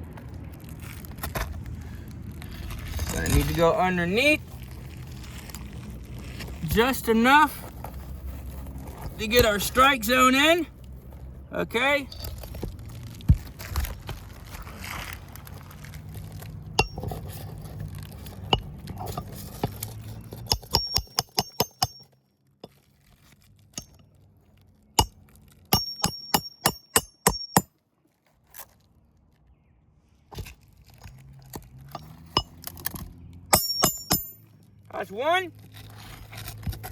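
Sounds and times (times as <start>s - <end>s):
hammer striking a nail: 16.8s - 17.0s, 20.4s - 22.1s, 25.0s - 27.7s, 33.5s - 34.4s.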